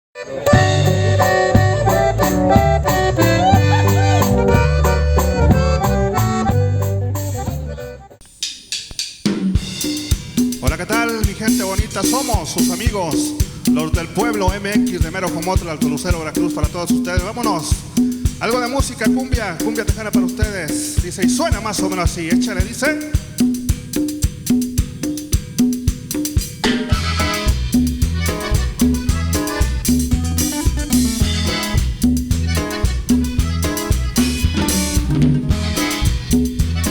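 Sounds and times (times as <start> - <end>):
accordion band music: 0.2 - 36.9
sharp drum hits: 8.2 - 36.9.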